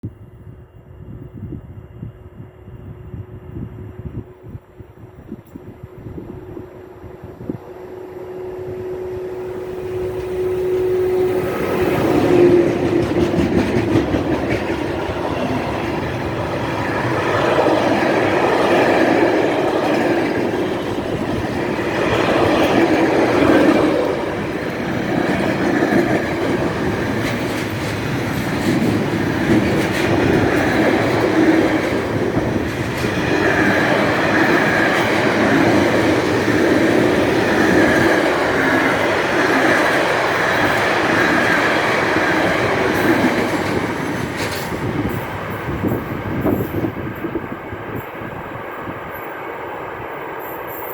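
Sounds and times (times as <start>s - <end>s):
electric locomotive hum: 0.0s - 50.9s
train wheels clattering on rails: 9.8s - 49.4s.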